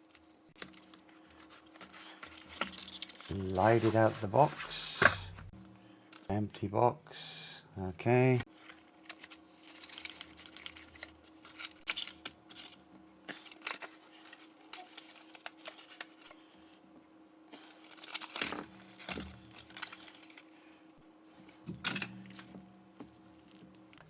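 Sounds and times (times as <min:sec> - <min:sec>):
cardboard box packaging rustling: 0:01.4 - 0:05.5.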